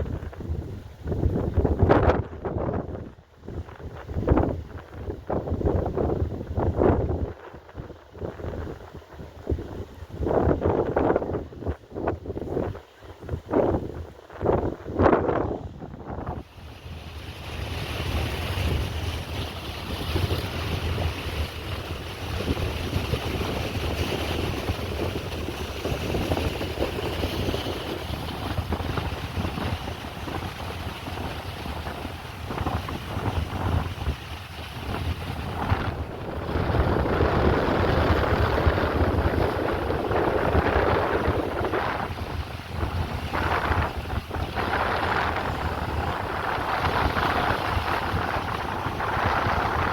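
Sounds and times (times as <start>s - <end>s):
wind buffeting microphone: 0.0s - 49.9s.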